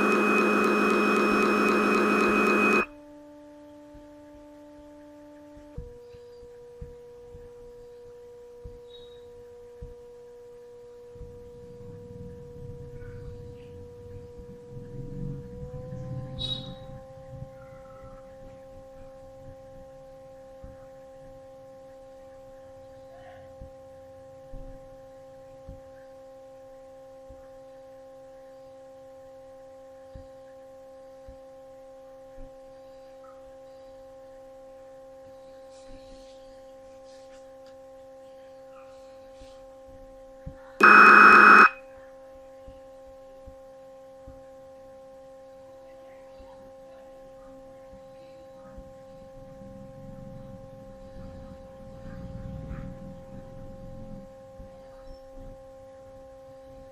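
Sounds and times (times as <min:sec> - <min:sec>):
loud harsh buzz: 0:00.0 - 0:02.9, 0:40.8 - 0:41.8
steady electronic hum: 0:00.0 - 0:05.6, 0:40.8 - 0:41.8.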